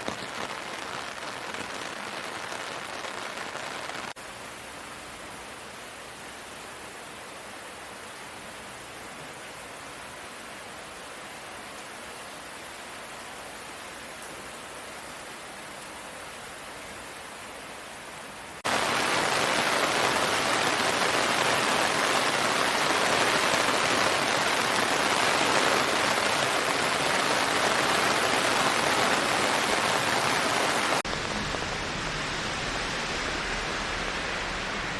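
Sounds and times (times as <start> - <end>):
heavy rain hissing: 0.0 - 4.2, 18.6 - 34.9.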